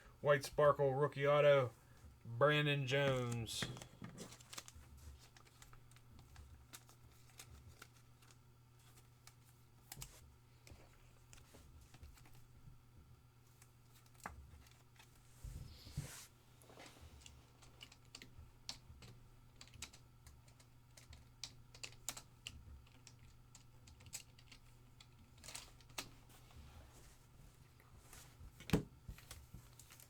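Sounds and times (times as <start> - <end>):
faint keyboard typing: 2.9 - 12.4, 16.8 - 26.2.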